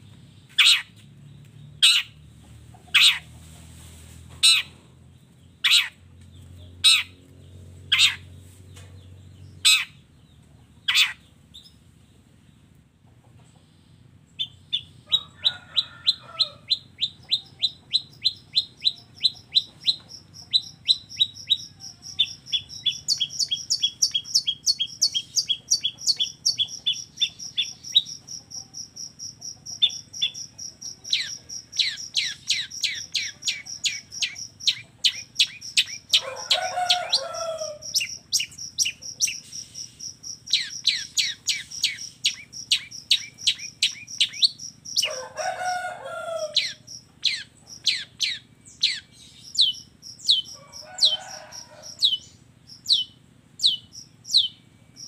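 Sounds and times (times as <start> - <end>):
high bird trill: 0.5 - 1.0, 1.8 - 2.2, 5.6 - 6.0, 7.9 - 8.3, 9.5 - 10.0, 10.8 - 11.8, 14.4 - 55.0
lower bird call: 13.8 - 55.0
bird singing sharp chirps: 17.0 - 28.3, 29.7 - 45.2, 46.6 - 55.0.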